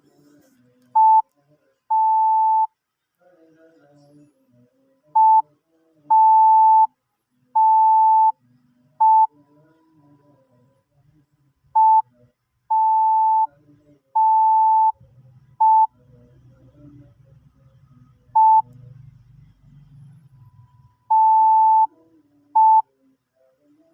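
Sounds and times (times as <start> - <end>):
morse code beeps: 12.7 - 13.5, 14.2 - 15.0, 18.4 - 18.6, 21.1 - 21.9.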